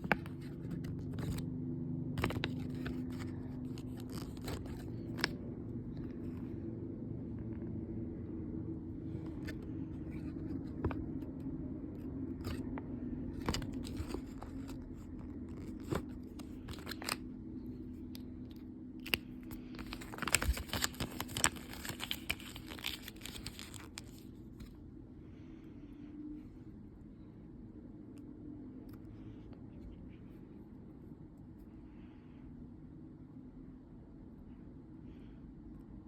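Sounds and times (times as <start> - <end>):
low steady hum: 0.0 - 36.0
packaging torn and crinkled: 2.2 - 5.4, 13.3 - 17.2, 19.0 - 24.3.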